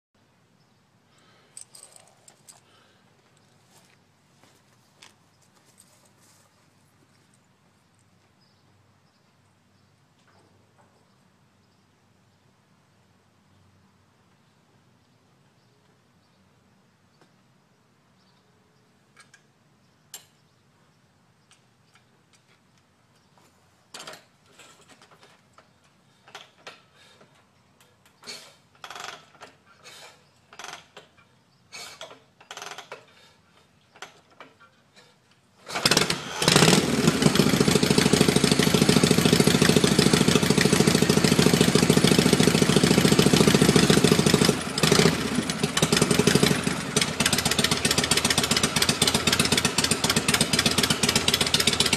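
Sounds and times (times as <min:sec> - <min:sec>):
motorcycle engine cranking: 0:23.9 - 0:31.3, 0:31.9 - 0:51.9
motorcycle engine running loudly: 0:35.8 - 0:51.9.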